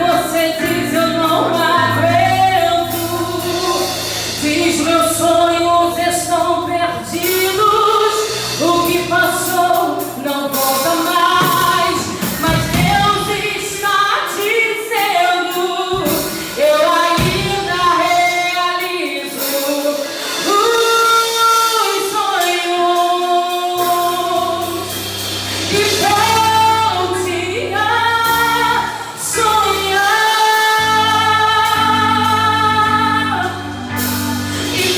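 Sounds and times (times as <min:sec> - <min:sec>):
sustained bass notes: 0:00.0 - 0:13.8, 0:23.5 - 0:34.9
keyboard notes: 0:00.0 - 0:34.9
woman singing lead: 0:00.0 - 0:34.9.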